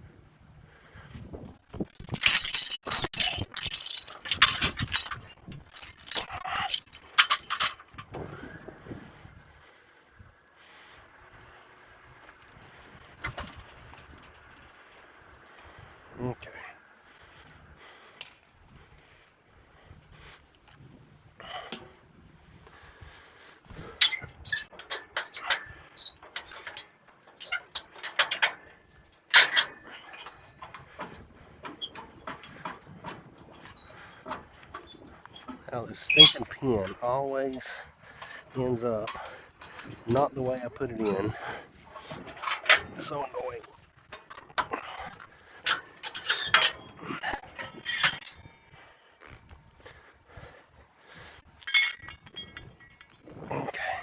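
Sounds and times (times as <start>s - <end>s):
clanks of trailer hardware: 1.8s - 8.9s, 12.4s - 14.7s, 23.7s - 49.4s, 51.6s - 54.0s.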